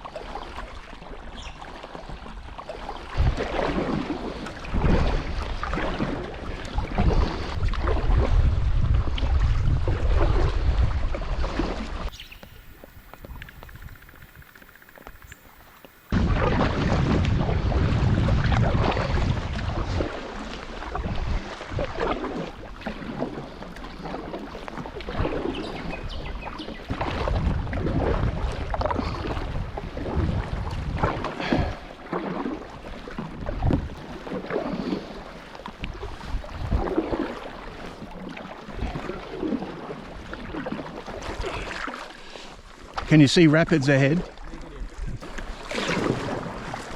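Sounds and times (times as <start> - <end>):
kayak paddle splashing: 0.0 - 46.9
wind buffeting microphone: 3.1 - 23.3, 24.8 - 31.9, 32.7 - 35.2, 35.8 - 38.0, 44.5 - 46.9.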